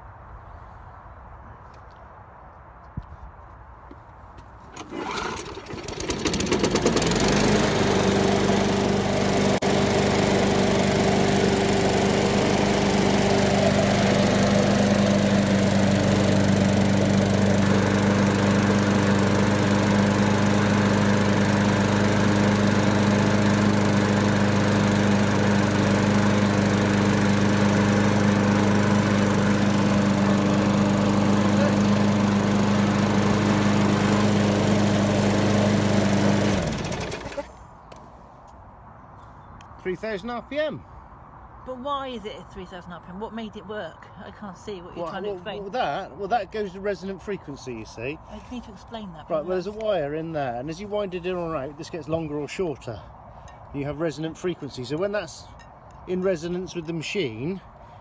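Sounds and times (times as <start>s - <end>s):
lawn mower engine starting and running: 4.6s - 38.1s, 45.0s - 48.6s, 49.3s - 52.4s, 53.8s - 55.3s, 56.0s - 58.0s.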